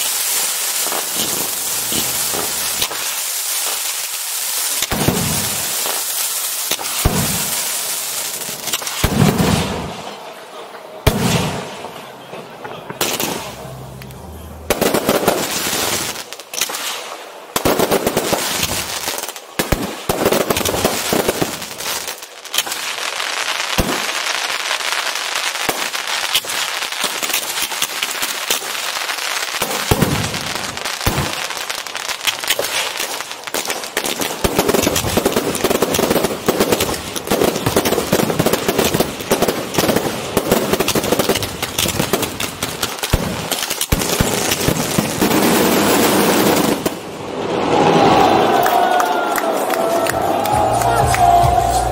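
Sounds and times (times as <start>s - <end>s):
firecrackers crackling: 0.0s - 51.9s.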